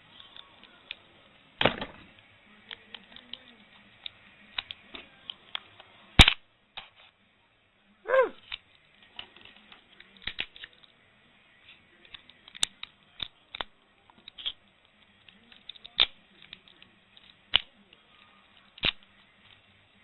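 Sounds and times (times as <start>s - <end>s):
loud sharp crack: 6.2s - 6.4s.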